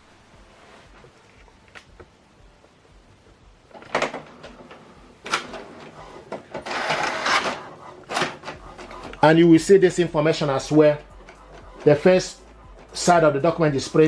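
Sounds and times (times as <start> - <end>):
printer whirring rattle: 0.5 - 14.0
faint printer clicks: 3.7 - 14.0
printer mechanism clattering: 3.7 - 14.0.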